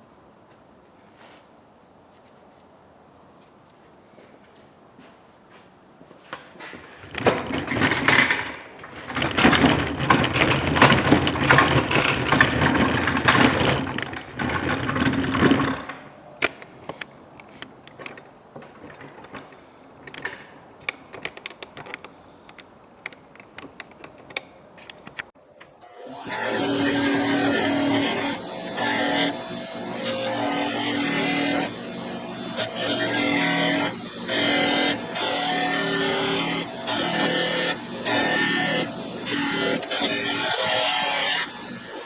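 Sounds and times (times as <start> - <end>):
power tool abrading metal: 7.2 - 16.1, 25.8 - 42.0.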